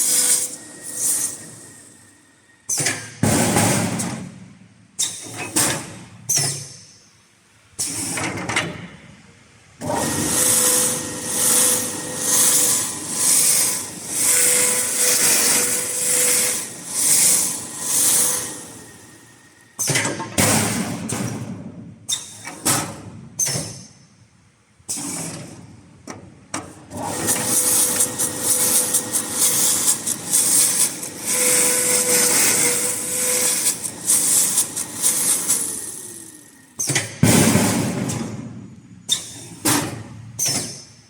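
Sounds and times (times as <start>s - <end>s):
sanding machine hissing: 0.0s - 2.1s, 9.8s - 19.6s, 27.0s - 36.8s.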